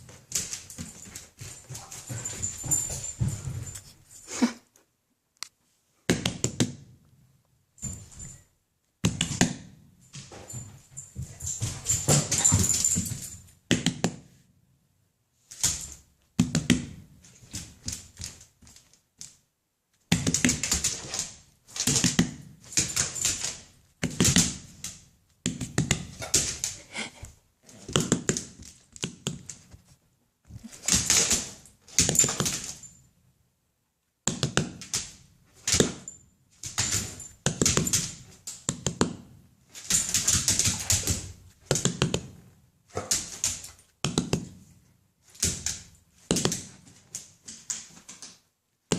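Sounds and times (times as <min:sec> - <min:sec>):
puppy claws tapping on hard floor: 0:00.0 - 0:03.9, 0:15.5 - 0:19.4, 0:20.1 - 0:33.0, 0:34.2 - 0:44.7, 0:45.3 - 0:48.9.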